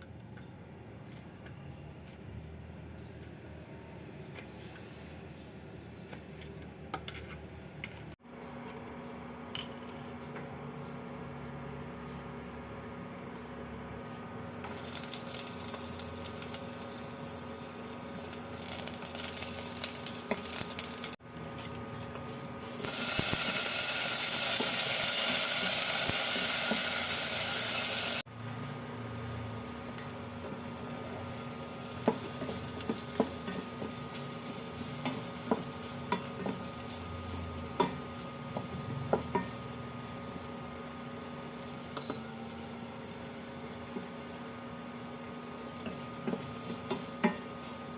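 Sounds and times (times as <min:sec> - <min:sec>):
food sizzling in a pan: 0:14.6 - 0:21.2, 0:22.8 - 0:47.9.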